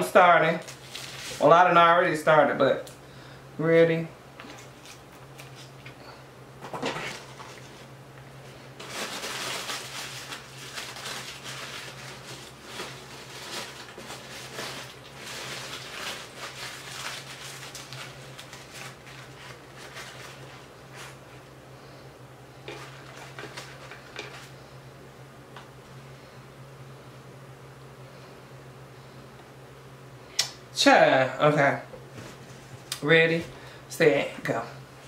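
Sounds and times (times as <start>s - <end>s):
low electrical hum: 0.0s - 35.0s
food handling sounds: 8.8s - 21.4s, 22.6s - 24.6s.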